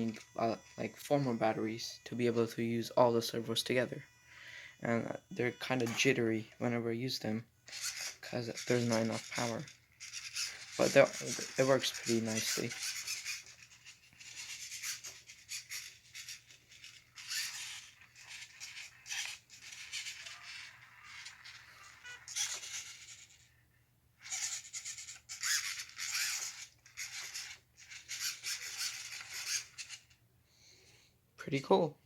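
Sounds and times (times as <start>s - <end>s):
servos whirring high-pitched: 7.7s - 23.6s, 24.2s - 30.2s.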